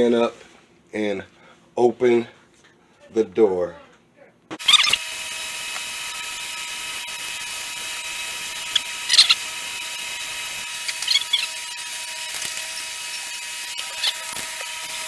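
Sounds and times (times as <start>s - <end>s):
small electric motor whining: 4.6s - 15.0s.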